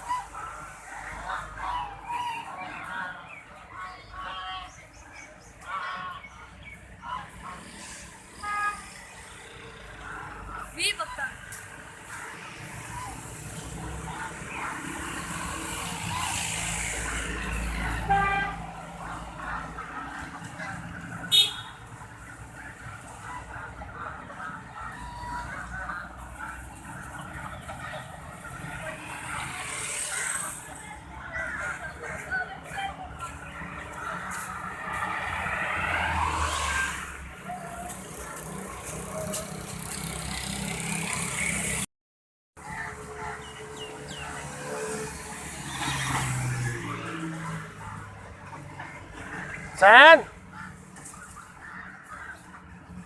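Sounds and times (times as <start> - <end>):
vehicle passing: 7.0 - 41.9, 42.6 - 53.0
horn toot: 21.3 - 21.8.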